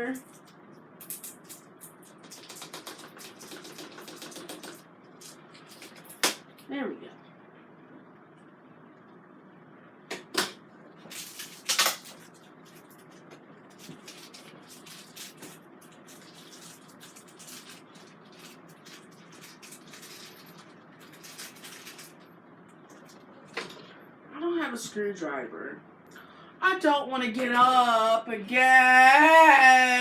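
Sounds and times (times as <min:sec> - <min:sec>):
plastic parts clicking and rattling: 0:13.7 - 0:22.2.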